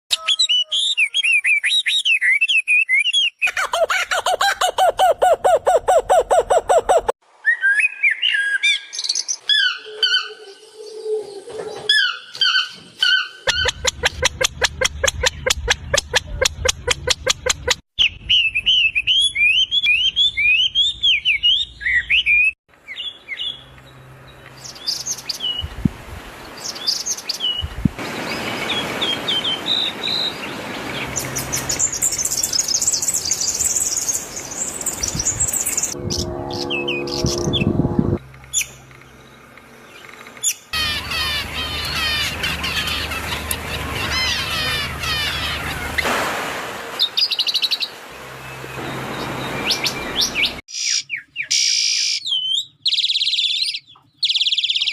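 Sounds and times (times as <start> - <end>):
small birds chirping: 12.1 - 36.0, 38.5 - 46.0, 47.0 - 54.9.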